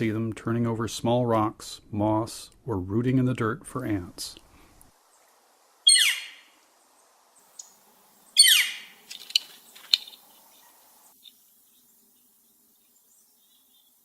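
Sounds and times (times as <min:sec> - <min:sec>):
woodpecker falling scream calls: 0:05.8 - 0:06.5, 0:08.4 - 0:11.4.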